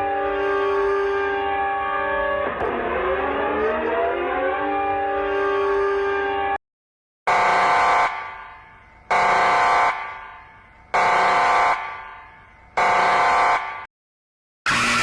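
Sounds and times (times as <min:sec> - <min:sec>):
emergency alarm beeps: 0:07.3 - 0:13.9
steady alarm tone: 0:07.3 - 0:13.9.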